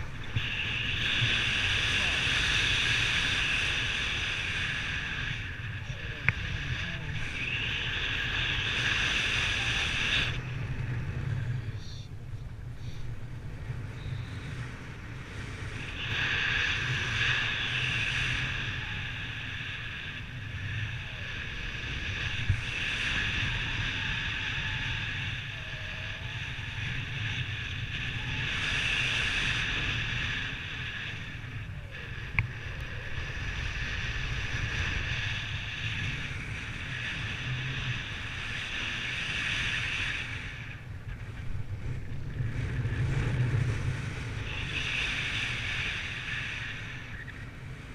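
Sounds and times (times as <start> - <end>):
high wind whistle: 0.0 - 11.0
wind rushing over microphone: 0.0 - 47.9.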